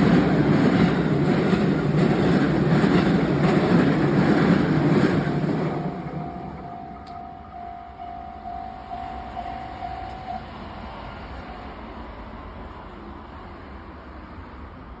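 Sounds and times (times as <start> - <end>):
railroad crossing alarm ringing: 0.0 - 13.2
low rumble of passing train: 0.0 - 15.0.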